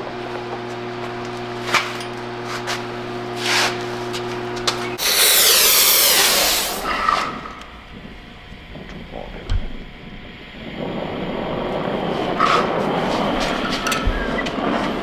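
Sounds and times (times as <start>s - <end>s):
loud hiss: 5.0s - 7.0s.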